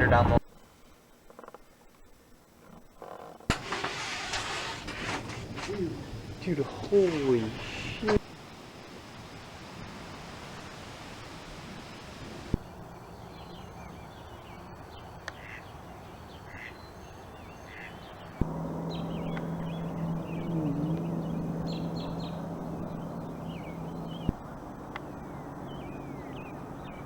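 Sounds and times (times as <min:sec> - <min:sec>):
birds chirping: 0:03.5 - 0:09.8, 0:11.4 - 0:27.0
harsh bird calls: 0:13.1 - 0:27.0
steady hum: 0:18.1 - 0:27.0.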